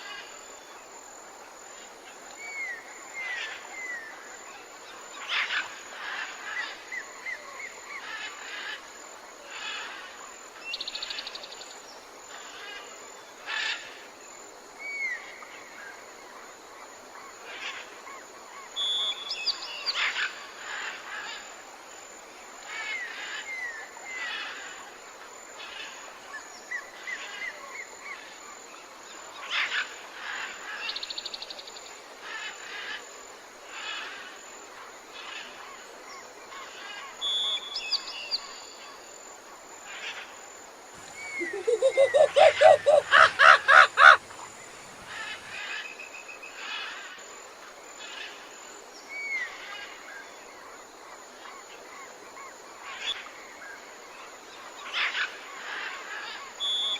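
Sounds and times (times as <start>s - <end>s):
rapid rising bird calls: 41.0s - 45.6s
bird chirps and whistles: 41.3s - 44.0s.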